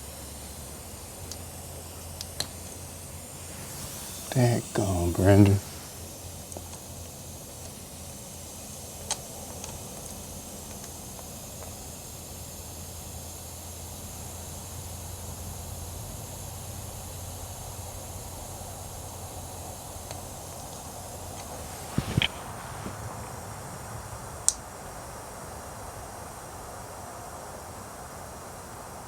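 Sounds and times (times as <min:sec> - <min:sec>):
low hum and hiss: 0:00.0 - 0:29.0
sharp click: 0:21.4 - 0:23.1.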